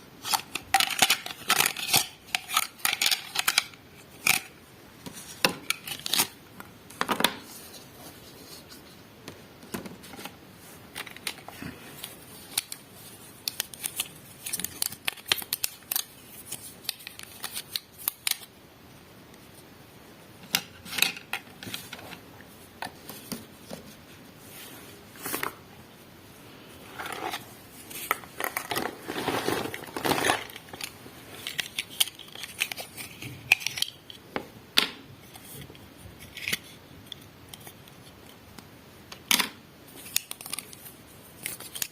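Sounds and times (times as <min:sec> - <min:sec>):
packaging crinkling: 0:27.0 - 0:34.0.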